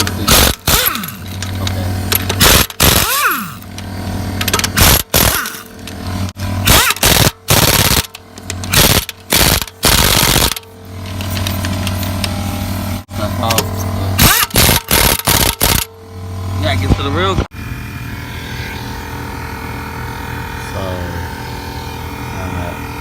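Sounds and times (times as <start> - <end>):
impact wrench hammering: 0.0 - 3.8, 4.4 - 5.7, 6.3 - 10.7, 14.2 - 15.9.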